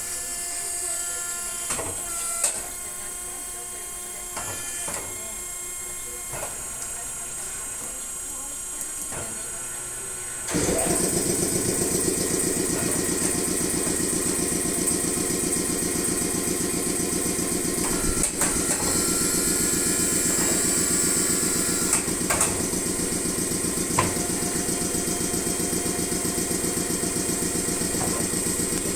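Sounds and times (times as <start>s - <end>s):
tire changer motor running: 8.9s - 28.9s.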